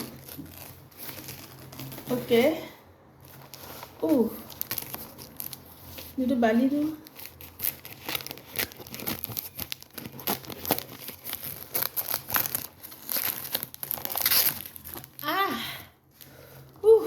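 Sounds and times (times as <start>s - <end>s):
packaging crinkling and tearing: 0.0s - 2.3s, 3.2s - 15.5s.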